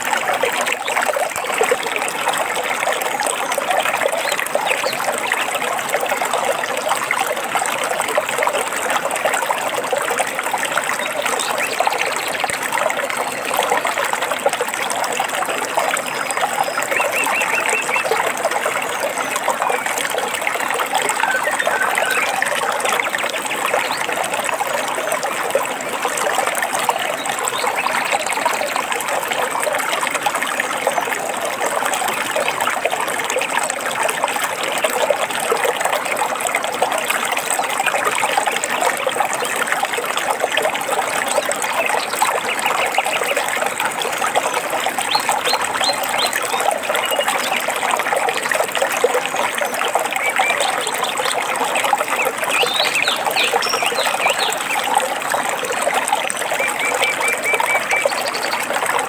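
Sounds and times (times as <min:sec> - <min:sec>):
stream water babbling: 0:00.0 - 0:59.0.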